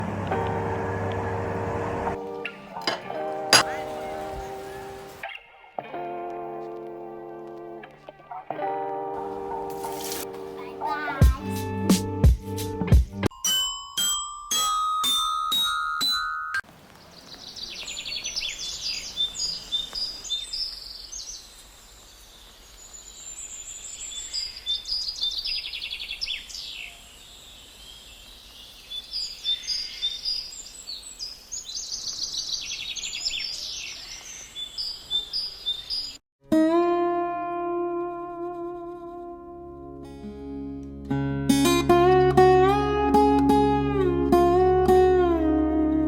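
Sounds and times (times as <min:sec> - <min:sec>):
birds chirping and trilling: 0:02.5 - 0:05.8, 0:16.0 - 0:36.2
ringing chime notes: 0:13.3 - 0:16.6
faint hiss: 0:16.7 - 0:35.0.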